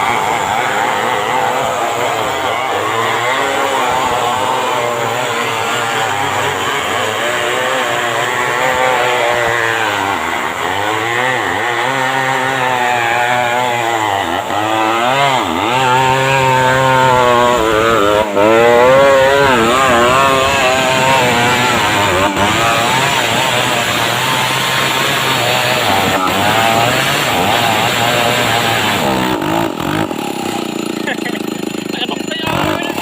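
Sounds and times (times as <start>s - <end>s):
chainsaw ripping timber: 0.0s - 33.0s.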